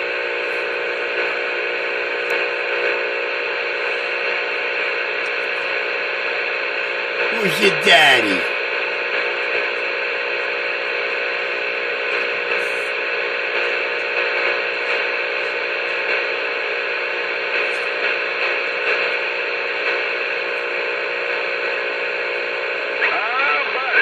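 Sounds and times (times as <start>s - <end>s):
radio static hiss: 23.0s - 24.0s.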